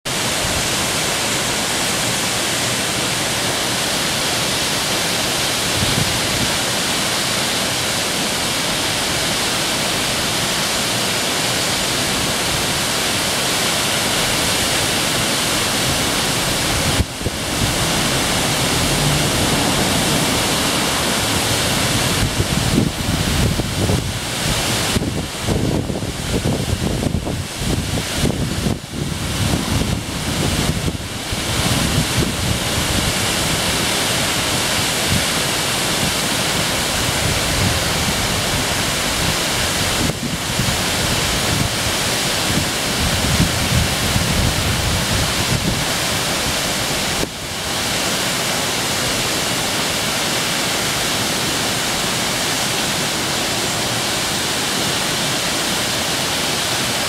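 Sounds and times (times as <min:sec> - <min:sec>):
waterfall rushing: 0:00.1 - 0:57.0
wind buffeting microphone: 0:15.2 - 0:47.3.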